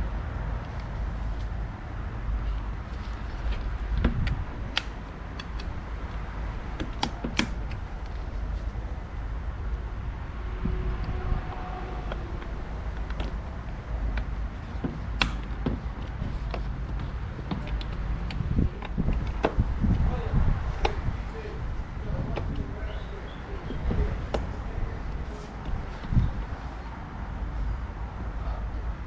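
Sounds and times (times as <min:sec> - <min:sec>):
steady low rumble: 0:00.0 - 0:29.0
clicks and knocks on car door parts: 0:02.9 - 0:08.3, 0:12.0 - 0:20.0, 0:23.8 - 0:24.6.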